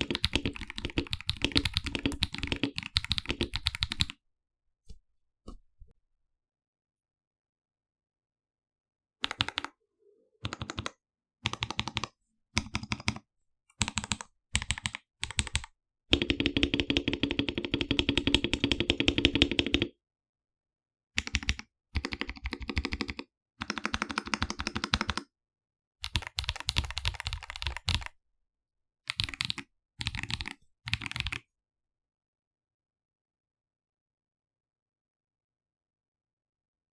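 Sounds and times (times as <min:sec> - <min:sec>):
mechanical keyboard keys pressed: 0:00.0 - 0:04.1, 0:13.8 - 0:19.9, 0:26.0 - 0:28.1, 0:29.1 - 0:31.4.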